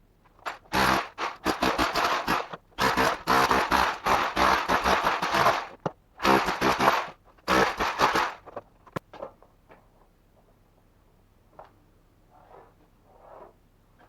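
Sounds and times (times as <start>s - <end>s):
power tool working into wall: 0.5s - 8.4s.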